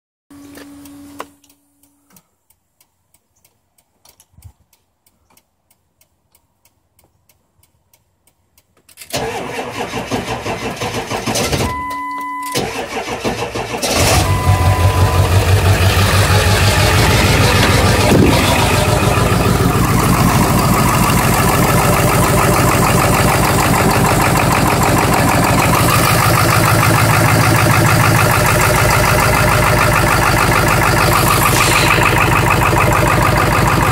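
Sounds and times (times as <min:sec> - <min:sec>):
faint regular ticking: 0:00.8 - 0:09.1
diesel engine cranking: 0:08.9 - 0:33.9
diesel engine idling loudly: 0:14.0 - 0:33.9
short steady tone: 0:14.2 - 0:21.0.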